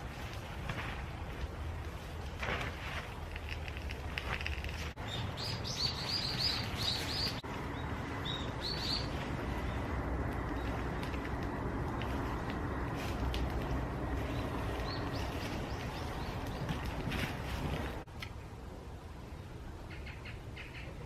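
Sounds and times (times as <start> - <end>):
low background rumble: 0.0 - 19.9
bird chirping: 5.0 - 11.2, 14.2 - 17.2.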